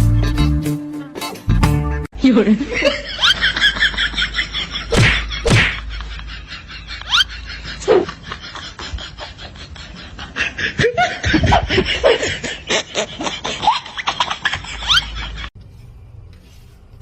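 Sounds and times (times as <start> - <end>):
people laughing: 2.4 - 15.5.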